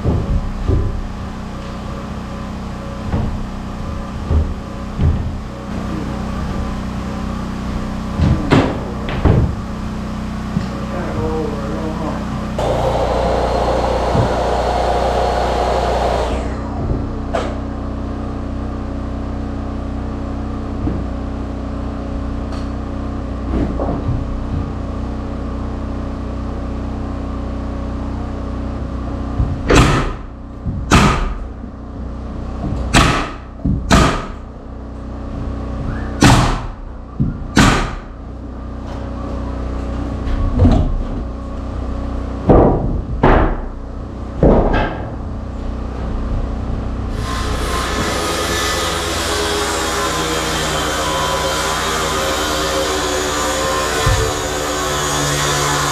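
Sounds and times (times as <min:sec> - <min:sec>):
low machine hum: 0:00.0 - 0:55.9
hammer knocking on wood: 0:03.1 - 0:05.6, 0:08.2 - 0:09.6, 0:12.6 - 0:14.7, 0:29.4 - 0:31.4, 0:32.6 - 0:34.4, 0:36.2 - 0:38.0, 0:42.5 - 0:43.8.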